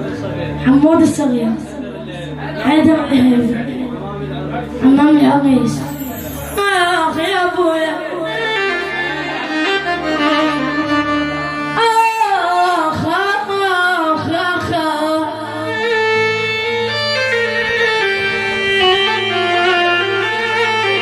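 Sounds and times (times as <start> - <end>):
held bass notes: 0.0 - 13.2, 15.2 - 21.0
ornamented sliding melody: 4.7 - 12.9, 15.4 - 21.0.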